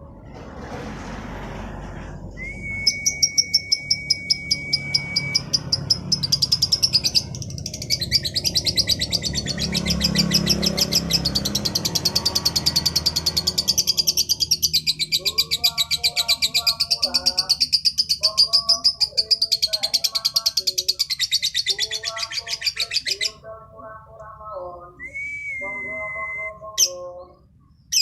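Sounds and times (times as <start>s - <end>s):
steady high whistle tone: 2.4s - 5.6s
lovebird chattering trill: 3.1s - 23.4s.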